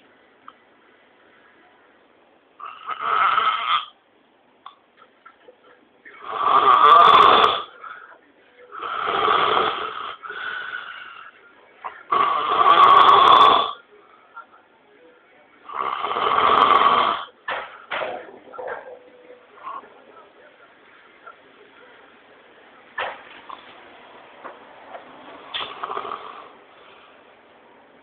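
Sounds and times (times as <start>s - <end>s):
man snoring loudly: 2.6s - 3.9s, 6.2s - 7.7s, 8.7s - 11.3s, 12.1s - 13.8s, 15.7s - 17.3s, 25.7s - 26.6s
quiet breaths: 5.7s - 17.4s, 25.1s - 28.0s.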